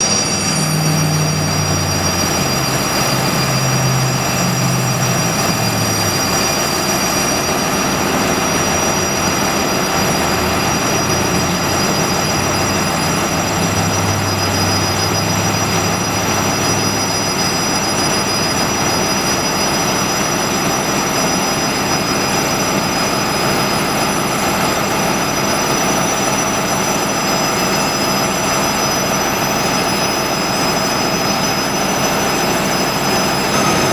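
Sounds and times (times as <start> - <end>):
low hum: 0.0 - 19.4
bus drivetrain and road noise: 0.0 - 33.9
high-pitched bus whine: 0.0 - 33.9.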